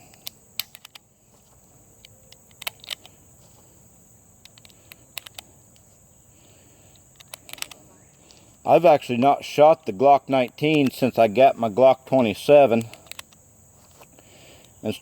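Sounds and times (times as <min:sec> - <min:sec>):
pistol handling clicks and knocks: 0:00.0 - 0:03.2, 0:04.4 - 0:06.0, 0:06.9 - 0:09.6, 0:10.3 - 0:14.8.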